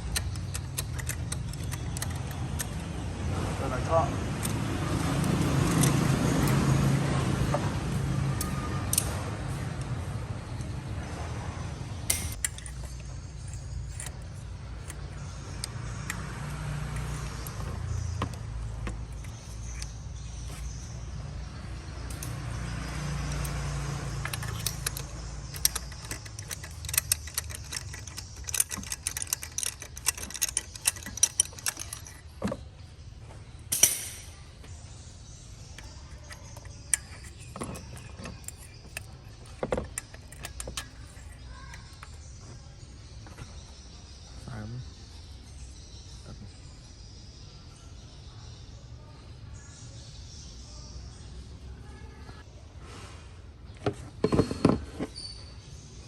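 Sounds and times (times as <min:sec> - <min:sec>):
metal tools clinking and rattling: 0:00.0 - 0:03.1, 0:04.3 - 0:07.5, 0:12.1 - 0:21.0, 0:22.0 - 0:32.7, 0:35.6 - 0:42.4.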